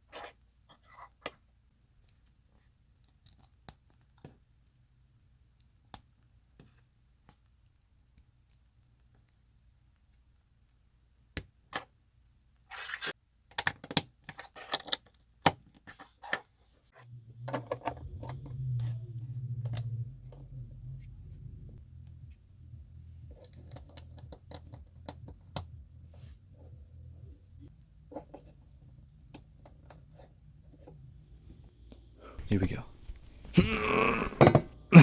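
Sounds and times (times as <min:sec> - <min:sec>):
low hum: 0:17.0 - 0:27.7, 0:30.6 - 0:35.0.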